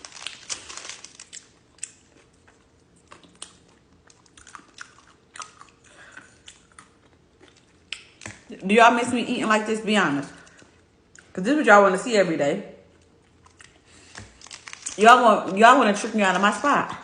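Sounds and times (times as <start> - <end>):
wet chewing noises: 1.2 - 8.5, 12.8 - 15.0.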